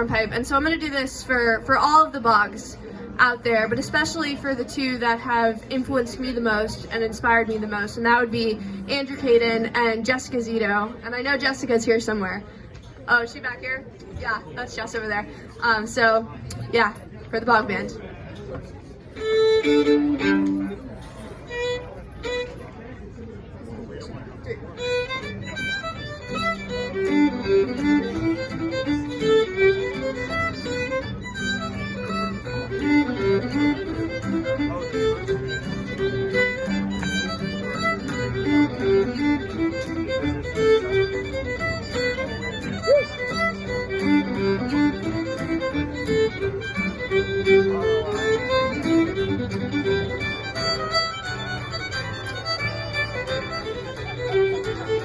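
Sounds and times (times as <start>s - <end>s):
fiddle playing lively melody: 0.0s - 12.5s, 18.7s - 23.3s, 24.4s - 55.0s
guitar accompaniment: 0.0s - 13.4s, 15.8s - 22.7s, 24.0s - 55.0s.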